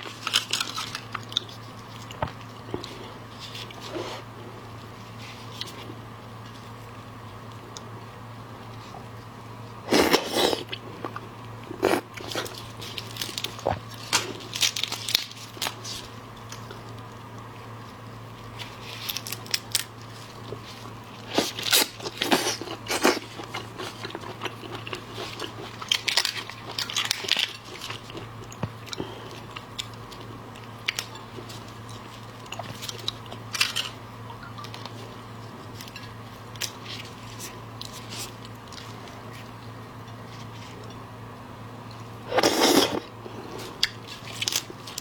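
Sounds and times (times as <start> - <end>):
low electrical hum: 0.0 - 45.0
person chewing crunchy food: 8.7 - 17.6, 18.3 - 34.0, 41.9 - 45.0.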